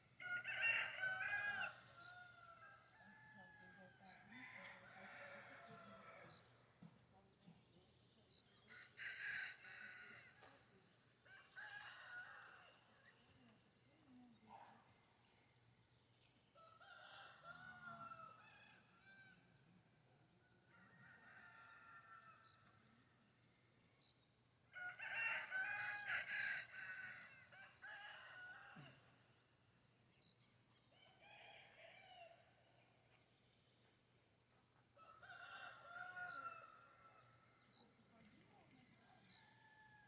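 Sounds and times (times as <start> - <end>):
rooster crowing: 0.2 - 6.4, 11.3 - 12.8, 16.6 - 19.4, 20.7 - 22.5, 24.7 - 29.1, 35.0 - 37.3.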